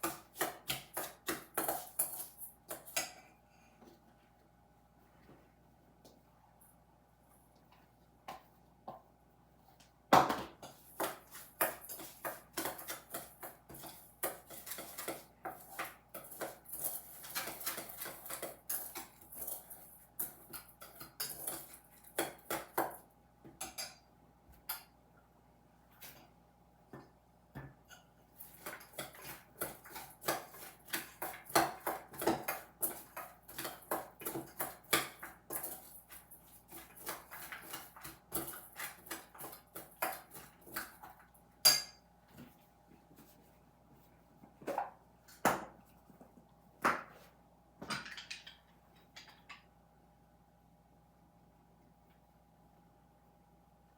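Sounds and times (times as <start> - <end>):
utensils clinking against a bowl: 10.6 - 23.0, 27.8 - 42.0.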